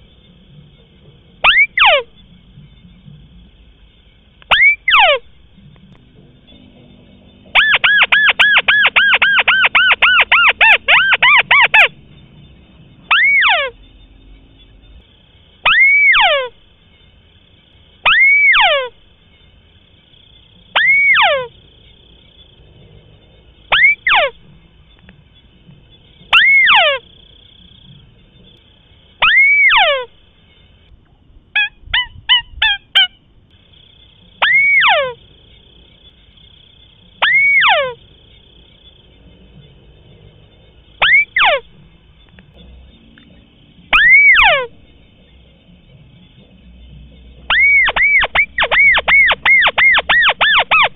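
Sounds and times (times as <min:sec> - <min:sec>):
crake calling with sliding notes: 0:04.4 - 0:12.3, 0:15.6 - 0:16.7, 0:26.2 - 0:27.1, 0:29.2 - 0:30.5, 0:41.0 - 0:45.7, 0:47.3 - 0:50.9.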